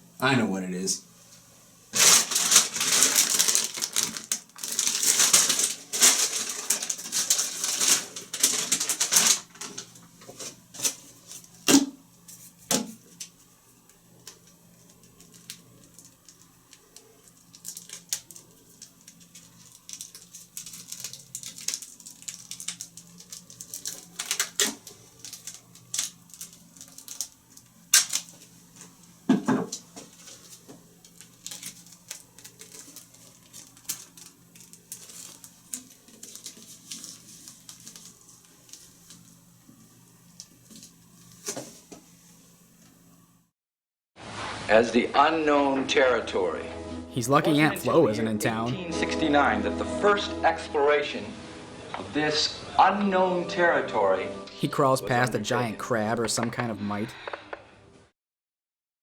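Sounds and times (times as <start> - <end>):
sharp clicks and crackles: 14.2 - 28.3.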